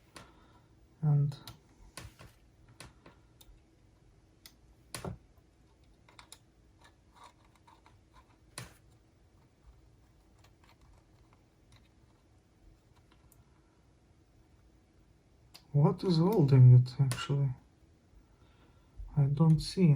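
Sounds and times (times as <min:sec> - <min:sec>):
small clicks and taps of hand work: 0:00.0 - 0:00.4, 0:01.4 - 0:03.7, 0:04.4 - 0:09.0.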